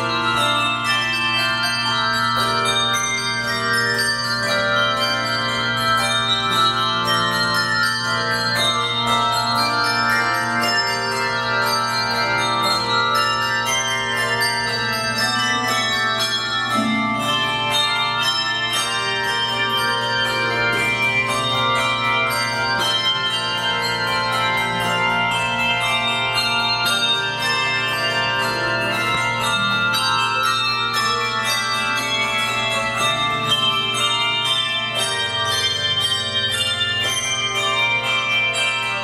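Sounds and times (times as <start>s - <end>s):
handbell choir playing: 0.0s - 39.0s.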